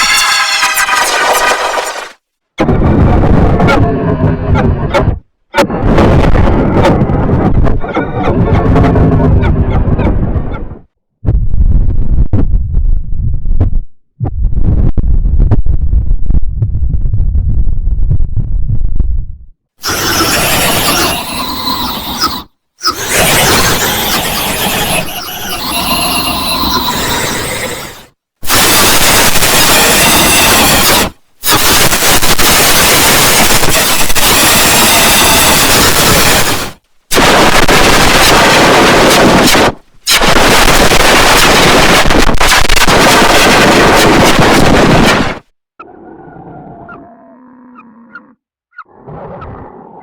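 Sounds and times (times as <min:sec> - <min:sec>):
harsh distorted noise blasts: 0:00.0 - 0:12.8, 0:19.8 - 0:45.5
farm animal calls: 0:46.8 - 0:50.0.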